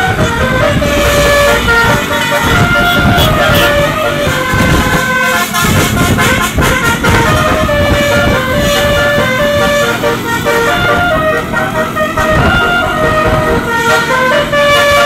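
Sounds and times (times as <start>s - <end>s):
bus horn playing a tune: 0.0s - 15.0s
steady low rumble: 0.1s - 13.6s.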